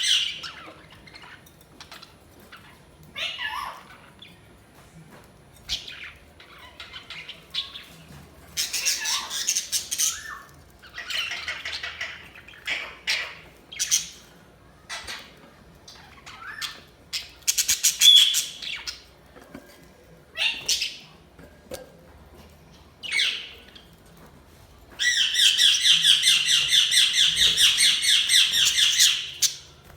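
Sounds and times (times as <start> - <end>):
budgerigars chirping and squawking: 0.0 - 4.4, 5.7 - 14.3, 14.9 - 19.1, 20.4 - 21.1, 23.0 - 23.8, 25.0 - 29.7.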